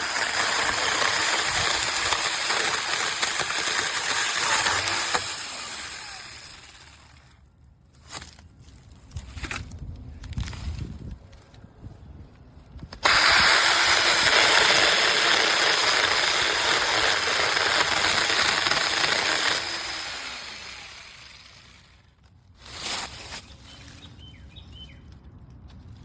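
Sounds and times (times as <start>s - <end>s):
mini chainsaw cutting: 0.0s - 7.4s, 12.9s - 23.2s.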